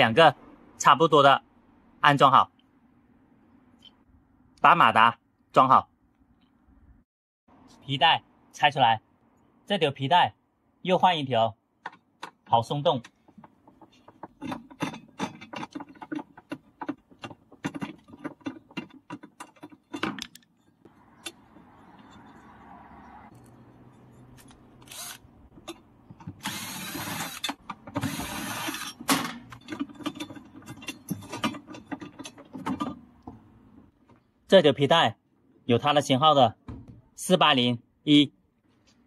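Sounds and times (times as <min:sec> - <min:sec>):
machine parts clicking and knocking: 0:11.8 - 0:22.5, 0:23.3 - 0:33.6.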